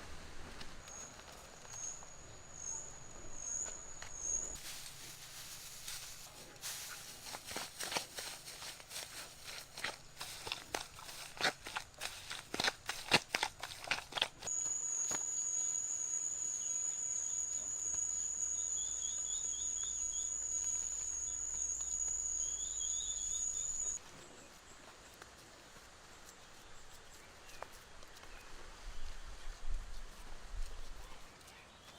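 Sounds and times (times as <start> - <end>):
high-pitched insect trill: 14.5 - 24.0.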